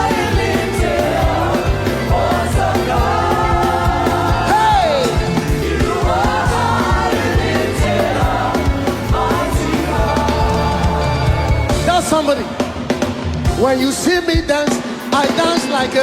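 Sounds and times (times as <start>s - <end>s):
voices singing long notes: 0.0s - 12.6s
band with drums and bass: 0.0s - 16.0s.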